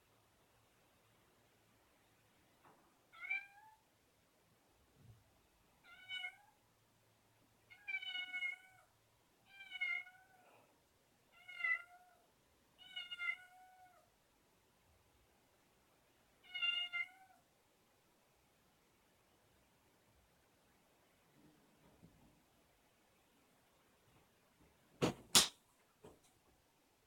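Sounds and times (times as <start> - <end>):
cat meowing: 3.1 - 3.8, 5.8 - 6.6, 7.7 - 8.9, 9.5 - 10.5, 11.3 - 14.1, 16.4 - 17.4.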